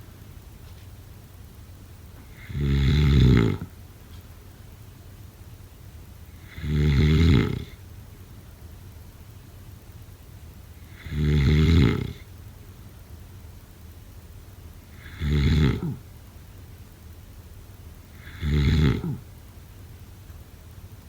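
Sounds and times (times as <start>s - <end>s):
person snoring: 2.3s - 3.7s, 6.4s - 7.8s, 10.9s - 12.2s, 14.9s - 16.0s, 18.2s - 19.2s.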